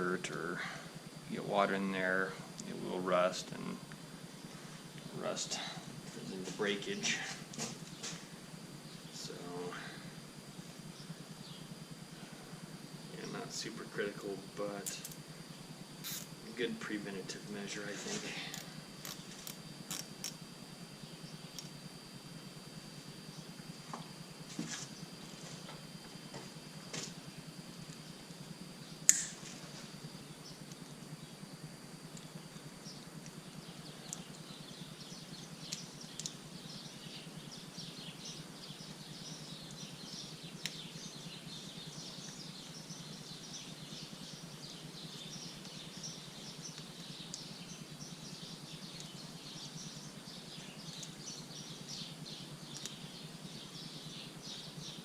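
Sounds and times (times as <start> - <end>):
small birds chirping: 0.0 - 55.0
steady low hum: 0.0 - 55.0
sharp clicks: 35.6 - 36.4, 52.7 - 53.0.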